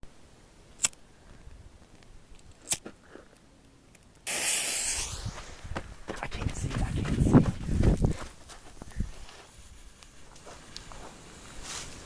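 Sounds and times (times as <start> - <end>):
loud spraying hiss: 4.3 - 6.8.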